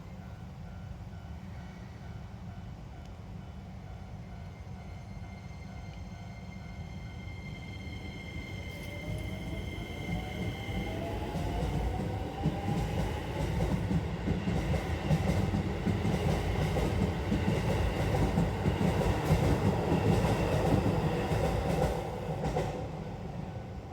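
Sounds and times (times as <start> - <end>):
train wheels clattering on rails: 10.1 - 22.9.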